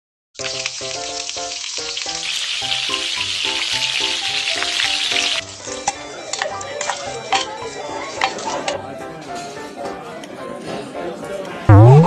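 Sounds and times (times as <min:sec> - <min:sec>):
food sizzling in a pan: 0:00.4 - 0:08.6
simple melody of short notes: 0:11.7 - 0:12.0.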